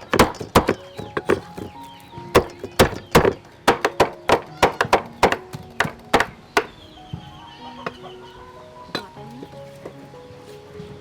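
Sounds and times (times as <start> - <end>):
soft background music: 0.0 - 11.0.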